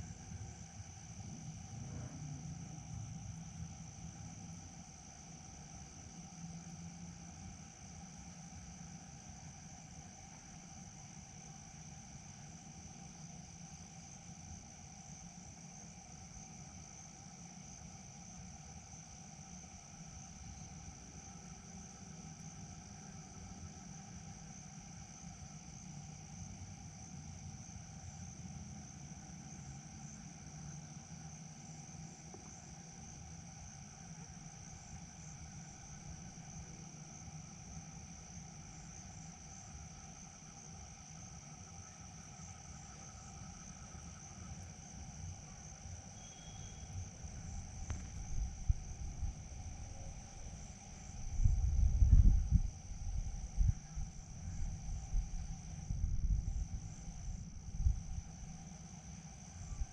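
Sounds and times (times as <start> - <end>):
faint low drone: 0.0 - 4.9
insects trilling: 0.0 - 59.9.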